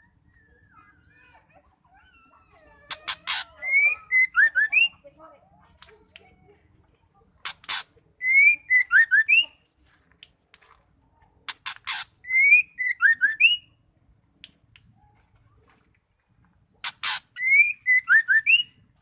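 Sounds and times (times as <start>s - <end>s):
bird harsh calls: 2.3s - 5.0s, 7.4s - 9.5s, 11.5s - 13.6s, 16.8s - 18.8s
bird whistling song: 3.0s - 5.0s, 7.7s - 9.6s, 11.9s - 13.8s, 16.8s - 18.8s.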